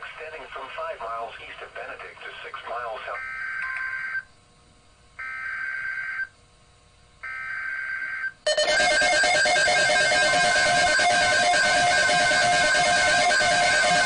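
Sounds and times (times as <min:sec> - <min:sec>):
buzzy digital data bursts: 0:08.7 - 0:14.0.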